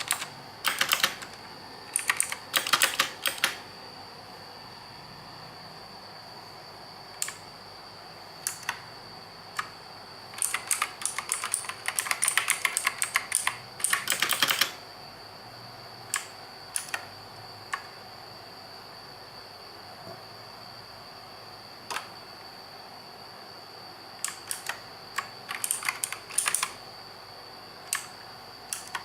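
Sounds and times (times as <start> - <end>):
clicky mechanical keyboard typing: 0.0 - 3.6, 7.2 - 7.4, 8.4 - 8.8, 10.4 - 14.8, 16.1 - 17.1, 21.9 - 22.1, 24.2 - 26.8, 27.9 - 29.0.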